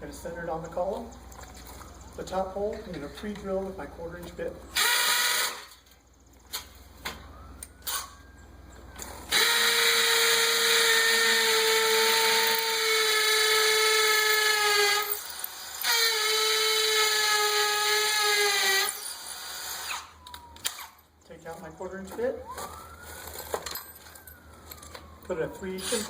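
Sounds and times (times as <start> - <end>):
hammer drill drilling into concrete: 4.8 - 5.7, 9.3 - 20.1.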